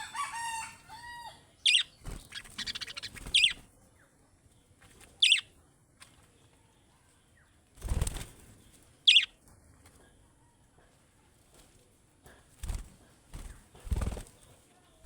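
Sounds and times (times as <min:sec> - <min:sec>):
budgerigar chirps: 0:01.6 - 0:03.6, 0:05.2 - 0:05.5, 0:09.1 - 0:09.3.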